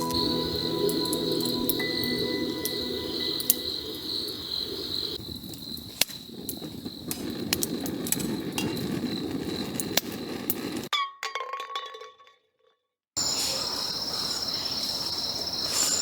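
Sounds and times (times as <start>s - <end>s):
insects chirring: 0.0s - 9.8s.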